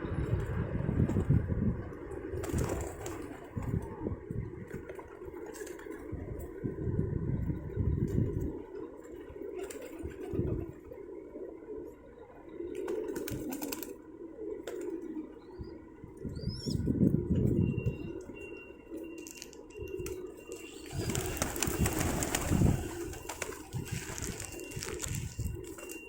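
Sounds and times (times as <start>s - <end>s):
pigeons cooing: 1.9s - 18.4s, 19.7s - 26.0s
rustling noise: 20.6s - 26.0s.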